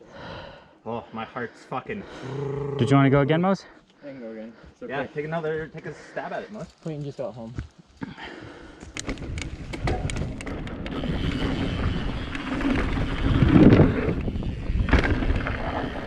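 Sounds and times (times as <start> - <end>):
bike tyres on dirt trail: 5.4 - 16.0
wind on microphone: 9.1 - 16.0.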